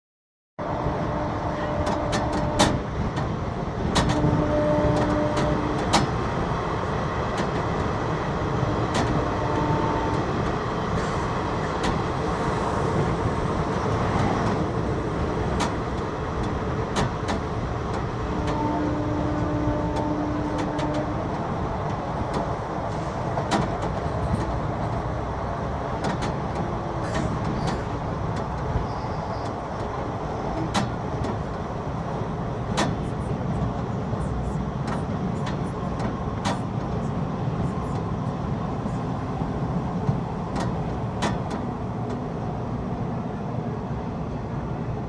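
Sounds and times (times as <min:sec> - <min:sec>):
two-tone train air horn: 0:00.6 - 0:02.9, 0:04.1 - 0:06.1, 0:08.6 - 0:10.5, 0:18.2 - 0:21.6
train rumbling past: 0:00.6 - 0:45.0.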